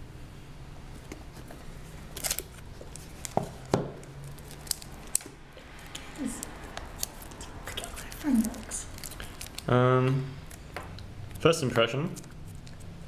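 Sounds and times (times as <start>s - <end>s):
steady low hum: 0.0s - 13.0s
packaging rustle: 1.2s - 9.8s.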